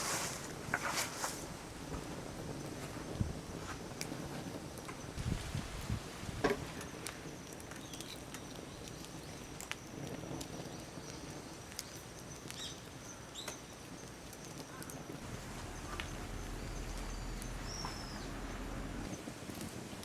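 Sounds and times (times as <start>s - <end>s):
faint high steady tone: 15.2s - 19.2s
short bird chirps: 15.3s - 19.1s.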